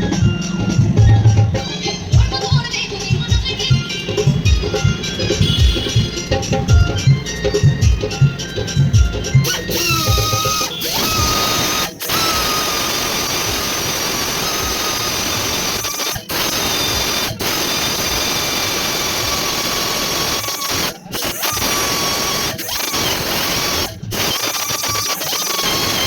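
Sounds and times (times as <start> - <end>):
rotary power tool whining: 0.0 - 26.0.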